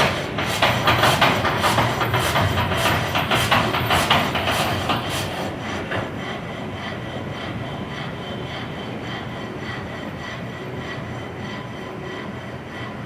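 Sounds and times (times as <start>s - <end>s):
water-powered sawmill rhythmic beat: 0.0s - 7.6s.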